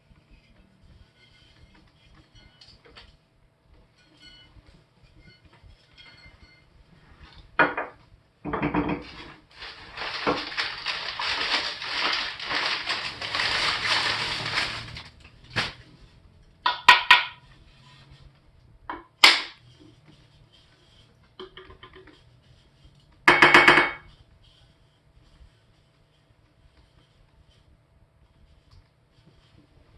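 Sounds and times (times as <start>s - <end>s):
packing material rustling: 9.0s - 15.9s.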